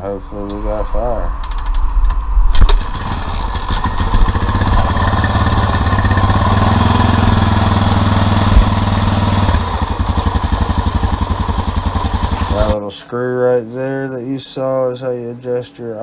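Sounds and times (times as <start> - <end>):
engine knocks: 0.0 - 12.8
four-stroke engine revving and idling: 2.6 - 12.8.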